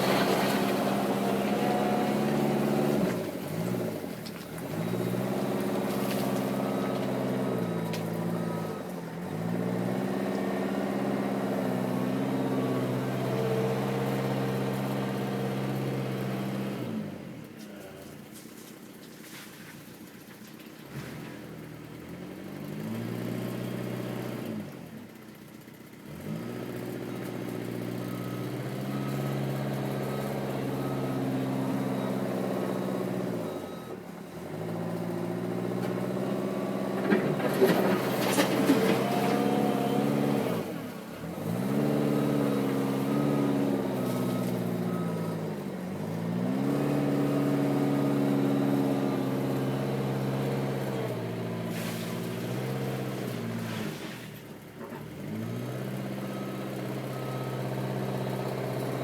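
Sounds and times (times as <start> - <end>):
backhoe diesel engine working: 0.0 - 59.0.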